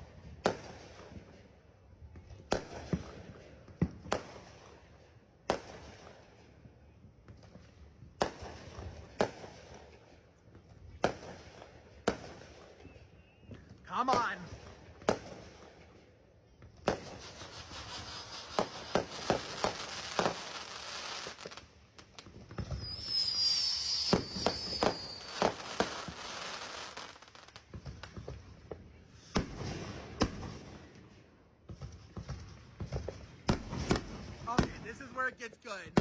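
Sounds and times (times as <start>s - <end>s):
fireworks crackling and banging: 0.0s - 36.0s
firework whistle falling in pitch: 22.6s - 26.5s.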